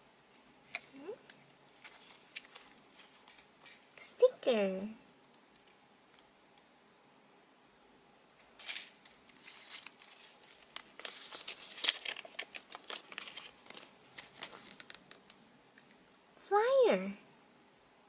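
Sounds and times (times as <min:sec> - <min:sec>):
packaging crinkling and rustling: 0:00.7 - 0:03.9, 0:08.4 - 0:15.4.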